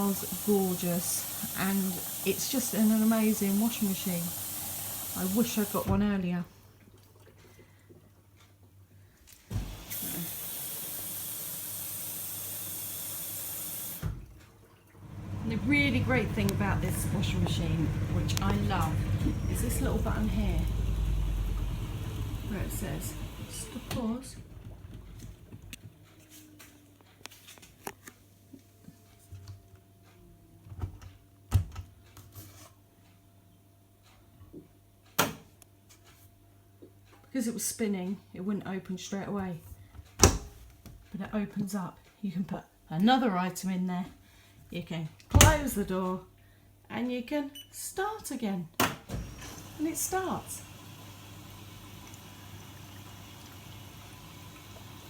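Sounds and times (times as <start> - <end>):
water spraying into machine: 0.0 - 5.9, 9.5 - 14.0, 15.0 - 25.7, 49.2 - 55.0
washing machine hum: 0.0 - 27.7, 44.6 - 46.3, 48.2 - 55.0.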